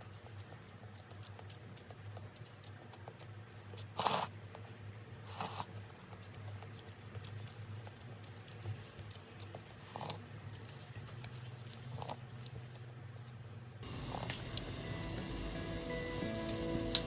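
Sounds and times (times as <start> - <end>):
low steady hum: 0.0 - 17.0
soft background music: 13.8 - 17.0.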